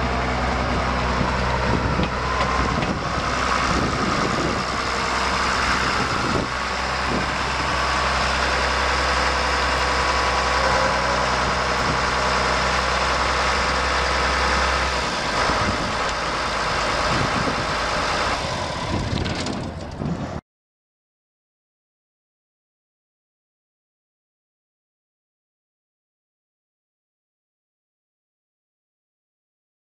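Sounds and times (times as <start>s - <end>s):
tractor diesel engine idling: 0.0s - 20.4s.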